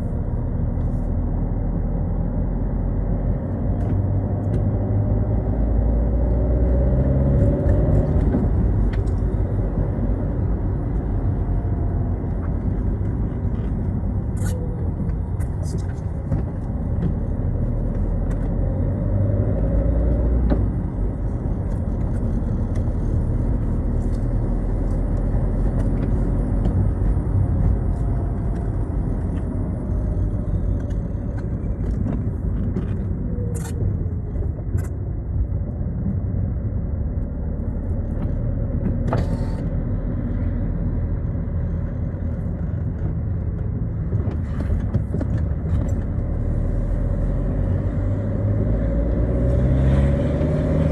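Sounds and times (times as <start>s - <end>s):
car engine rumble: 0.0s - 50.9s
tyres on wet road: 37.2s - 50.9s.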